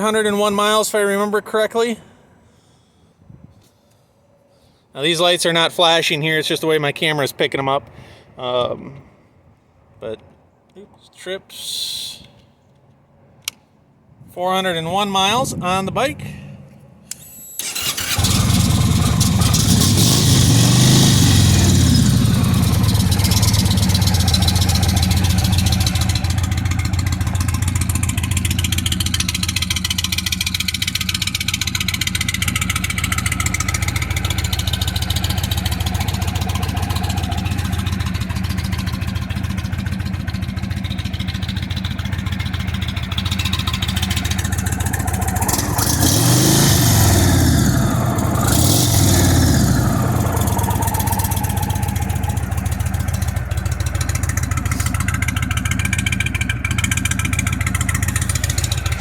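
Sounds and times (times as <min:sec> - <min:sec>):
motorcycle engine idling and revving: 0:17.6 - 0:59.0.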